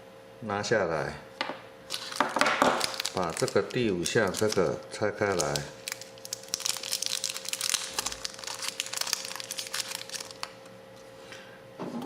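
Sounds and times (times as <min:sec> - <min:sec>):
plastic packaging crinkling: 0:01.9 - 0:10.7.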